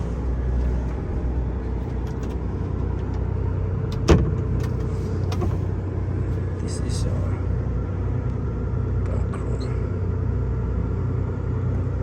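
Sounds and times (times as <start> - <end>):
boat engine drone: 0.0 - 12.0.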